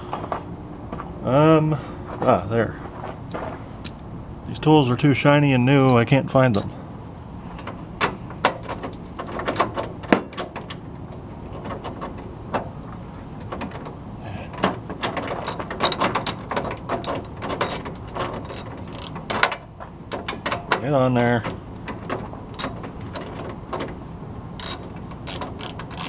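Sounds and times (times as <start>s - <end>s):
tools and metal parts clicking: 6.5s - 6.8s, 15.3s - 20.6s, 21.4s - 22.0s, 22.6s - 23.5s, 24.6s - 26.0s.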